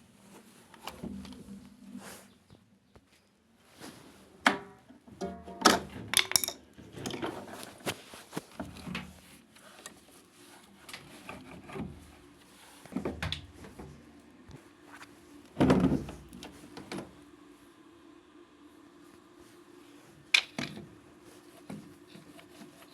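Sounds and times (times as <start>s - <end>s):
parts knocking and clicking: 4.5s - 7.4s.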